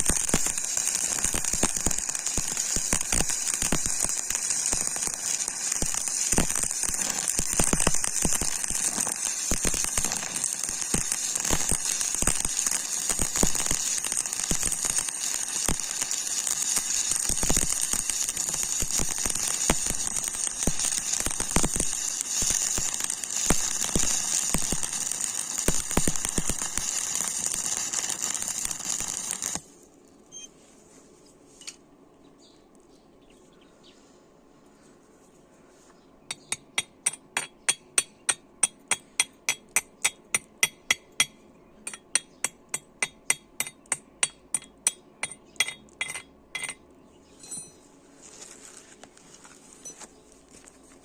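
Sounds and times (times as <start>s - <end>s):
welding arc crackling: 0.0s - 29.7s.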